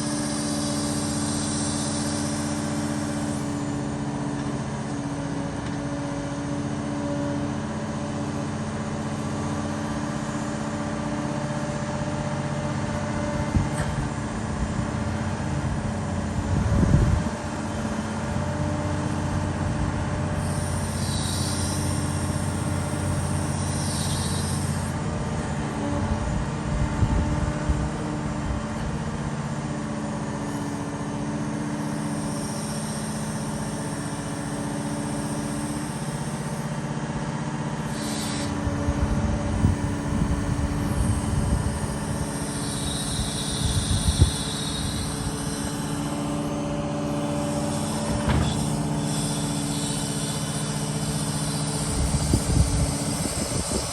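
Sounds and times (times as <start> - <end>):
high-pitched squeals: 0.0 - 3.8, 20.4 - 25.0, 30.5 - 36.8, 37.8 - 53.9
excavator diesel engine running: 0.0 - 53.9.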